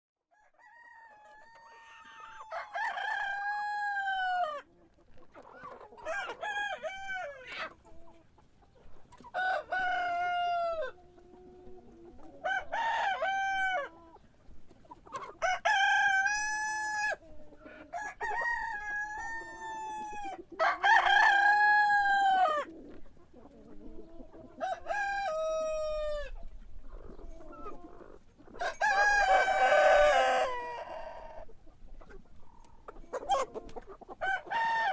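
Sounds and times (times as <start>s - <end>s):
rooster crowing: 0.3s - 4.6s, 20.6s - 22.7s, 28.6s - 31.4s, 34.2s - 34.9s.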